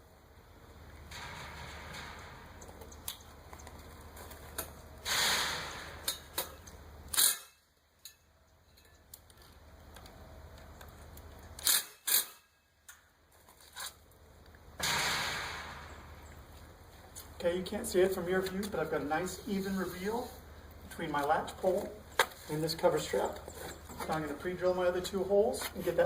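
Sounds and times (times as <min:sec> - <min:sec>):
metal gate clicks and knocks: 0:01.0 - 0:03.2, 0:04.6 - 0:09.0.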